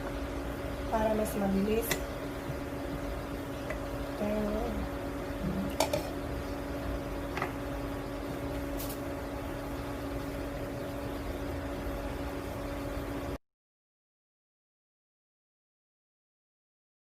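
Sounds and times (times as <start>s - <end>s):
appliance fan humming: 0.0s - 13.4s.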